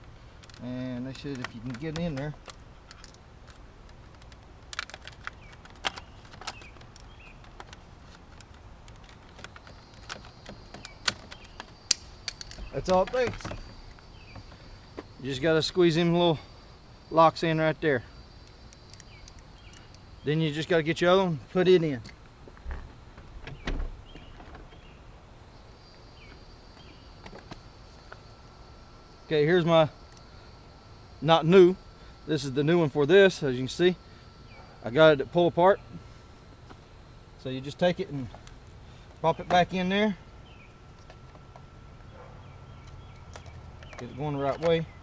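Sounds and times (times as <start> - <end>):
sharp clicks of parts: 1.2 - 14.6
faint high steady tone: 9.6 - 22.2, 25.4 - 41.1.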